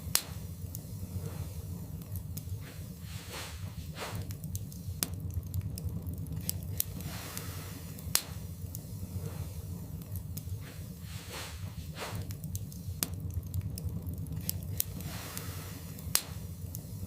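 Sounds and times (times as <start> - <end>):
log fire crackling and popping: 0.0 - 17.0
low steady fire rumble: 0.0 - 17.0.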